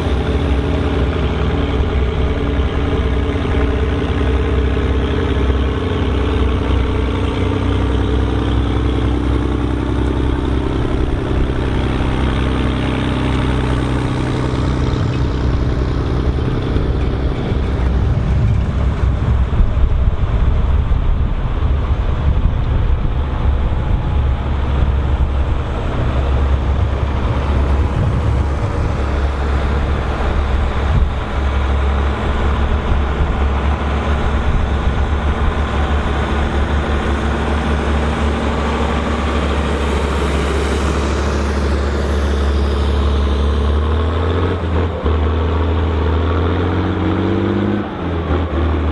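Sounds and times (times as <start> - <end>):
tractor diesel engine under load: 0.0 - 48.9.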